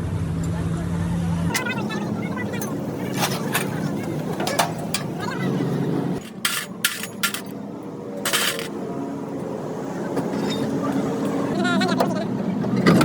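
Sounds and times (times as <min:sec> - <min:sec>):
engine hum: 0:00.0 - 0:13.0
metallic knocks and clatters: 0:06.2 - 0:07.5, 0:08.2 - 0:08.7.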